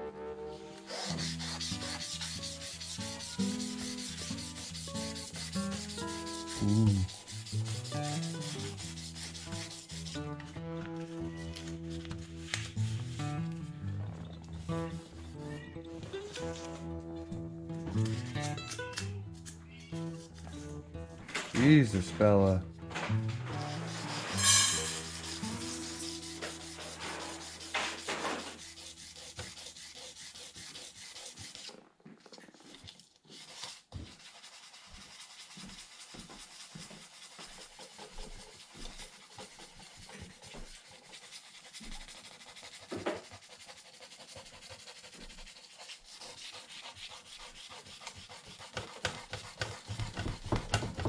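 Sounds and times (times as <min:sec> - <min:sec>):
sandpaper rubbing on plastic: 0:00.7 - 0:10.3, 0:11.3 - 0:13.5, 0:23.5 - 0:31.8, 0:32.6 - 0:51.0.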